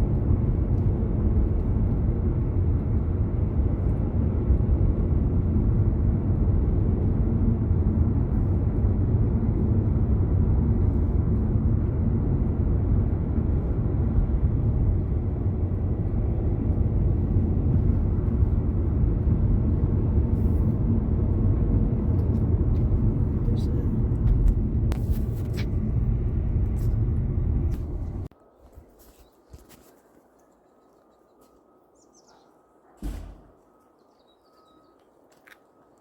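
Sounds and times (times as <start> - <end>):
car driving on road: 0.0 - 28.4.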